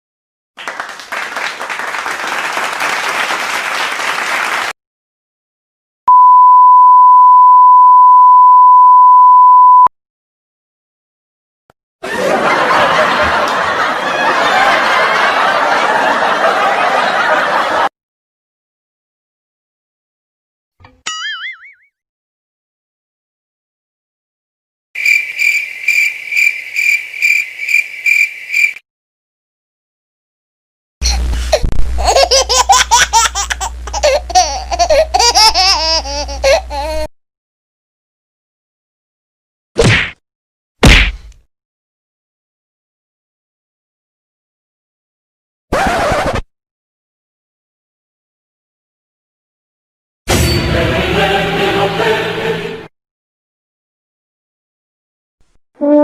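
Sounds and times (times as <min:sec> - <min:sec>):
canned laugh track: 0:12.0 - 0:17.9, 0:31.0 - 0:37.1
low hum: 0:31.0 - 0:32.0
high-pitched giggling: 0:31.0 - 0:37.1.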